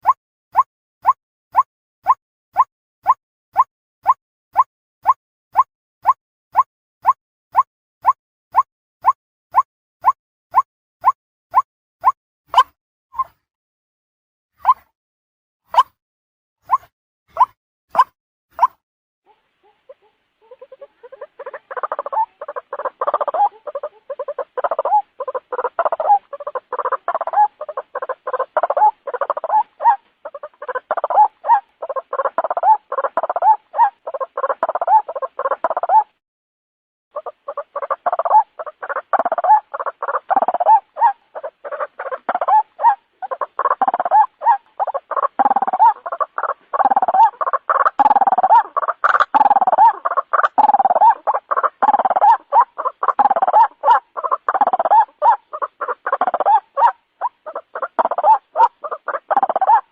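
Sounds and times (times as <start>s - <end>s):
bird croaking calls: 16.7s - 36.1s, 37.2s - 59.9s.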